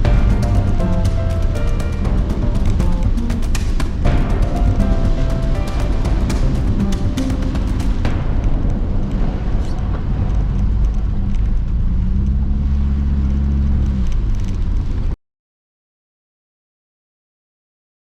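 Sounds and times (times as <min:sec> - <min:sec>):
scattered knocks: 0:00.0 - 0:08.8
steady low hum: 0:00.0 - 0:13.9
strong wind buffeting microphone: 0:00.0 - 0:15.2.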